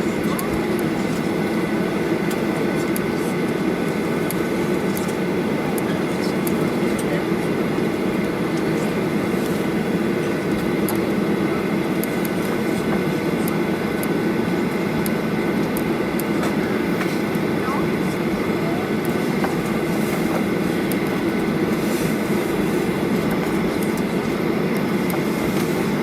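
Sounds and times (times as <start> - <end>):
low rumble of engines and air: 0.0 - 26.0.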